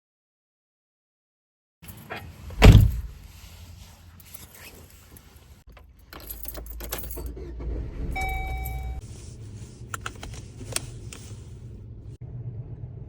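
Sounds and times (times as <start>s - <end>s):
car keys jangling: 1.8s - 3.3s, 4.1s - 7.5s, 8.1s - 9.0s
short electronic chime: 8.2s - 9.0s.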